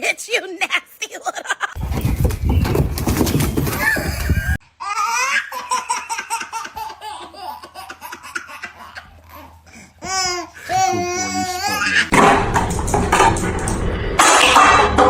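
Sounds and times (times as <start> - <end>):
person laughing hard: 1.2 - 1.8, 3.8 - 4.6, 10.6 - 12.1.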